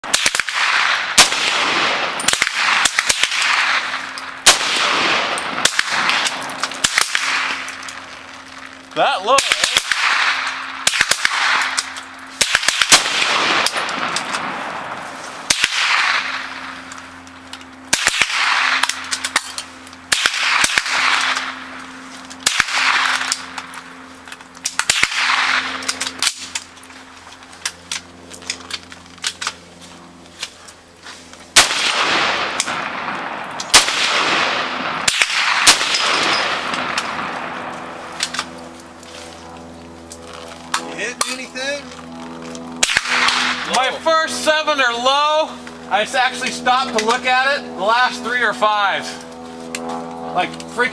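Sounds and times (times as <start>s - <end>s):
fainter distant rifle shots: 0.0s - 24.0s, 24.7s - 26.5s, 31.5s - 38.6s, 42.8s - 44.0s
rifle shots echoing: 0.0s - 24.1s, 24.7s - 26.6s, 31.5s - 38.8s, 42.6s - 44.0s.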